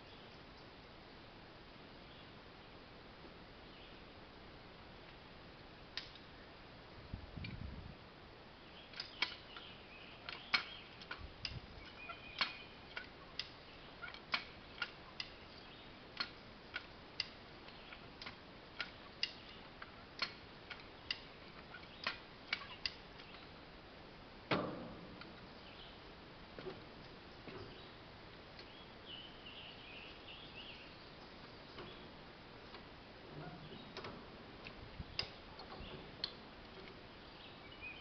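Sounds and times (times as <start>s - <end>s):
heavy clunk: 24.5s - 25.4s.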